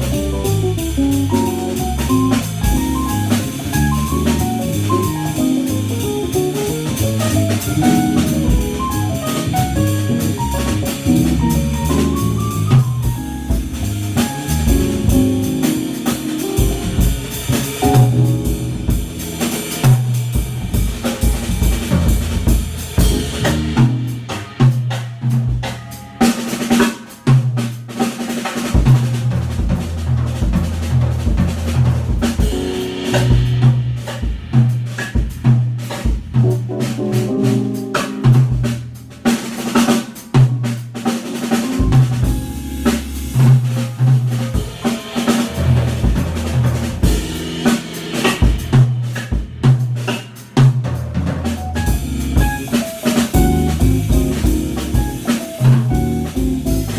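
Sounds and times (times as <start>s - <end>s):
keyboard melodic runs: 0.0s - 19.8s, 36.7s - 39.2s, 41.7s - 44.0s, 51.6s - 56.9s
bass line: 0.0s - 24.8s, 29.1s - 35.6s, 36.4s - 39.8s, 41.4s - 49.8s, 50.9s - 56.9s
drum kit playing: 0.0s - 56.9s.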